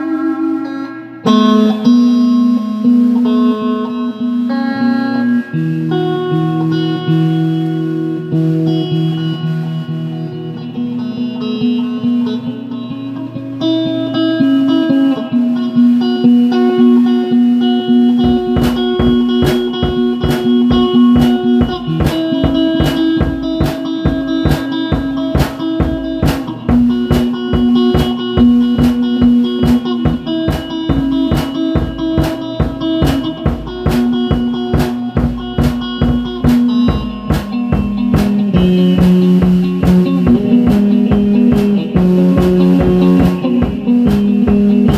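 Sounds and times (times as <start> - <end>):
guitar playing: 0.0 - 44.9
drum kit beat: 13.6 - 44.9.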